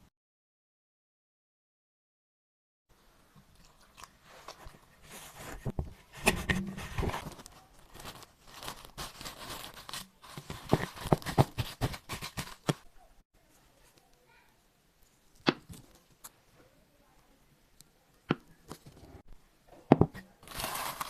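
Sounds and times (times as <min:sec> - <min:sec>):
kitchen crunching and scraping: 0:03.7 - 0:12.9, 0:18.3 - 0:21.0.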